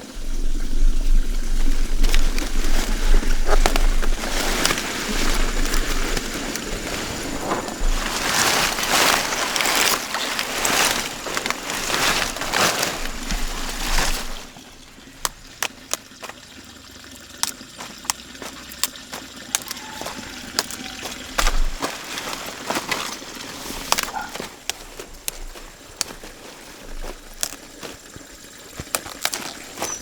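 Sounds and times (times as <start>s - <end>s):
water splashing and sloshing: 0.0s - 30.0s.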